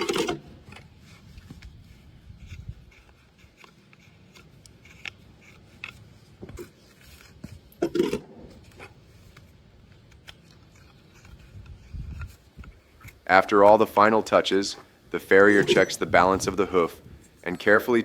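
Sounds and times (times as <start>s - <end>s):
hoof nippers snipping hoof: 15.3s - 16.6s.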